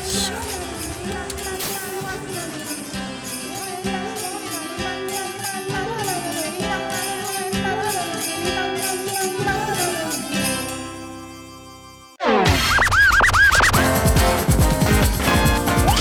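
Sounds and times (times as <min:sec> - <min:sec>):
jingling percussion: 0:00.0 - 0:11.5, 0:13.7 - 0:16.0
cartoon background music: 0:13.6 - 0:16.0.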